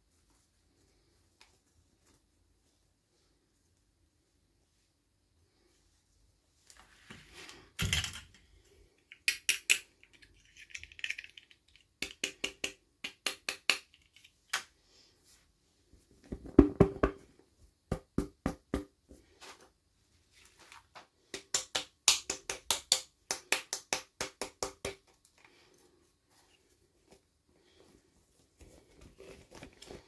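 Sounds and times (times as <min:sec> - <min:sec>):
plastic pieces clicking: 0:09.1 - 0:12.5.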